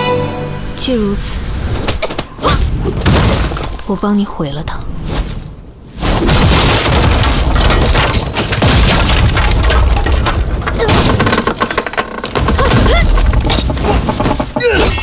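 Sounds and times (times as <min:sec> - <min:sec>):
rumbling and crashing destruction: 0:06.1 - 0:15.0.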